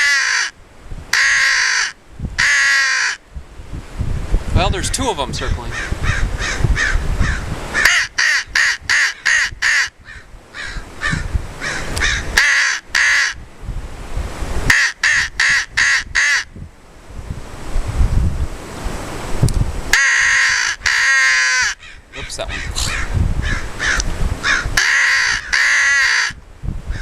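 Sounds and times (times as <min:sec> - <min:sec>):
crow call caws: 0:00.0 - 0:03.2, 0:05.7 - 0:13.4, 0:14.7 - 0:16.5, 0:19.9 - 0:27.0.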